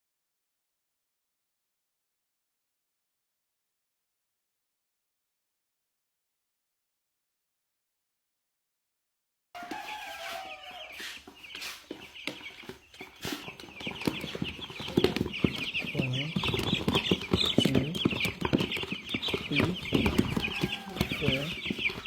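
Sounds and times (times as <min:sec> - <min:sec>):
chicks peeping in chorus: 0:09.6 - 0:22.0.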